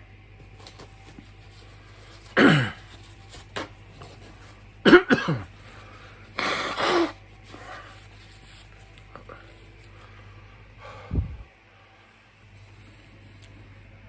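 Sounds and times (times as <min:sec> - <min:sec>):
person clearing throat: 0:02.3 - 0:03.0, 0:04.8 - 0:05.5, 0:06.4 - 0:07.2
person coughing: 0:02.3 - 0:03.0, 0:04.8 - 0:05.6, 0:06.4 - 0:07.2.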